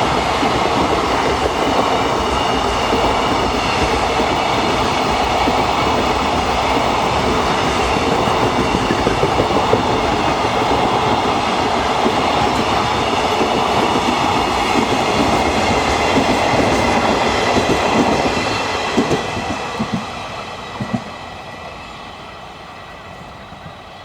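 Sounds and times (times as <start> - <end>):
train wheels clattering over rail joints: 7.2 - 20.1.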